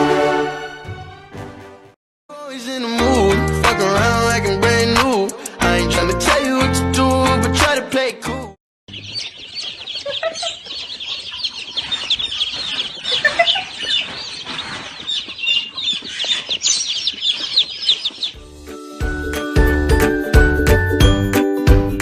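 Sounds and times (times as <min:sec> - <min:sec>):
flock of birds chirping: 0:08.9 - 0:18.4
tinkling music with a beat: 0:18.4 - 0:22.0.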